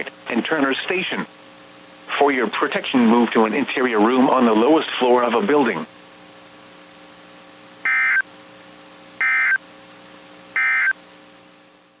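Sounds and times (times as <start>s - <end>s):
faint steady hum: 0.0s - 12.0s
warbling data tone bursts: 7.9s - 8.2s, 9.2s - 9.6s, 10.6s - 11.0s.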